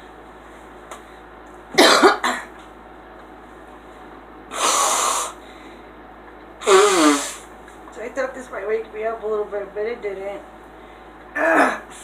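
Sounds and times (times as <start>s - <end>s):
woman coughing: 1.8s - 2.5s, 11.4s - 11.9s
breathy hiss: 4.5s - 5.7s, 6.6s - 7.5s.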